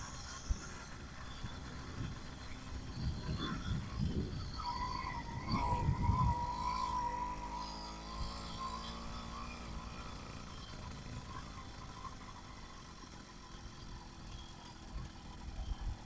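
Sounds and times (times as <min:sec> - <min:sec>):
motorized bicycle engine running: 0:00.0 - 0:16.0
wind buffeting microphone: 0:02.8 - 0:07.0.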